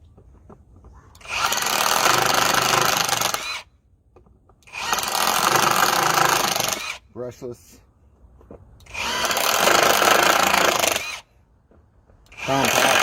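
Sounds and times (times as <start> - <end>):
cordless impact drill running: 1.2 - 3.7, 4.7 - 7.0, 8.8 - 11.2, 12.3 - 13.0.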